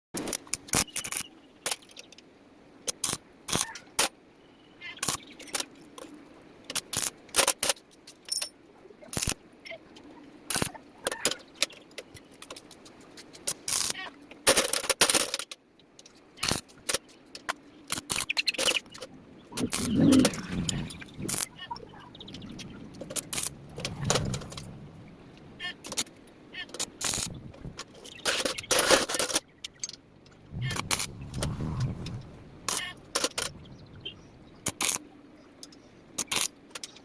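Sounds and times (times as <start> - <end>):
metallic clinks of iron pieces: 6.9 - 9.4.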